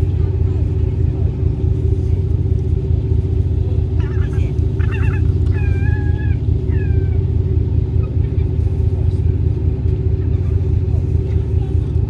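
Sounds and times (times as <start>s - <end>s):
ship engine rumble: 0.0s - 12.0s
gulls mewing: 3.9s - 8.6s.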